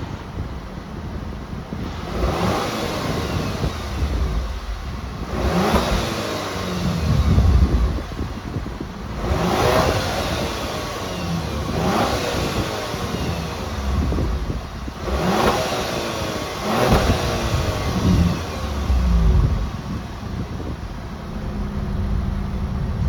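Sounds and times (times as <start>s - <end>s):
car engine revving: 1.7s - 23.0s.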